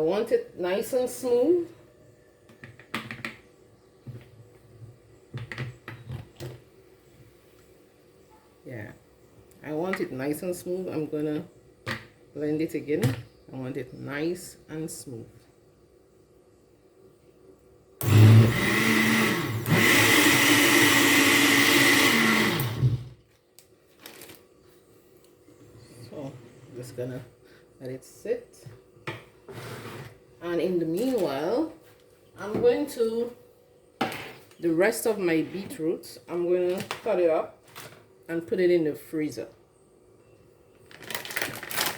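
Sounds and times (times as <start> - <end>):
blender motor running: 18.0 - 23.2.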